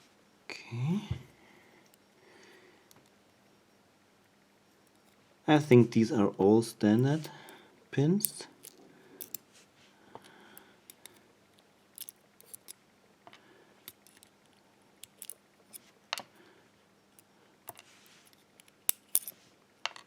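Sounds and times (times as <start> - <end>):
faint metallic clicks of pins: 8.2 - 9.5, 10.2 - 16.4, 17.1 - 20.0.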